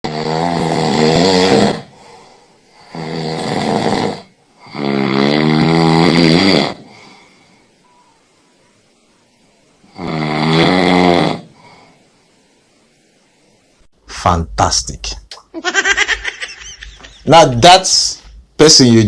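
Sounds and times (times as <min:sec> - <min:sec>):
man snoring: 0:00.0 - 0:07.3, 0:09.9 - 0:11.7.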